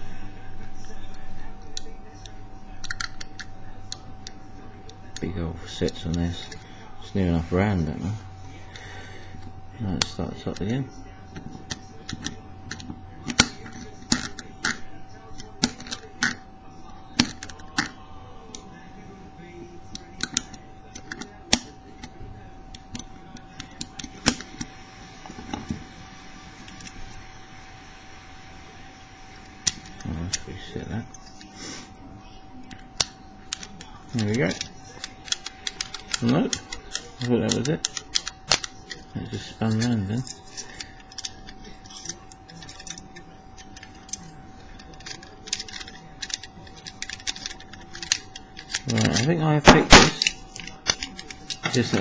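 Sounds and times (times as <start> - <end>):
lock picking metallic clicks: 32.7 - 52.0.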